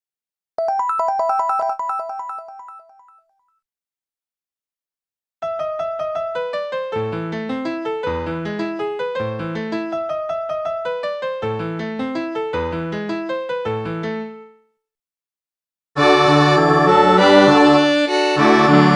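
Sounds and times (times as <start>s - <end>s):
polyphonic ringtone melody: 0.6s - 3.3s.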